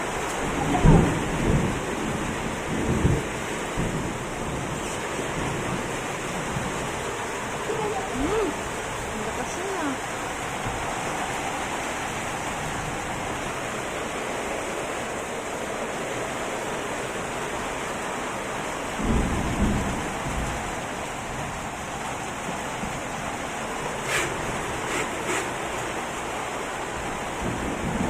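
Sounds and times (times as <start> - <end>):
low rumble of thunder: 0.0 - 9.6, 18.9 - 23.2, 27.0 - 28.0
heavy rain falling: 0.0 - 28.0.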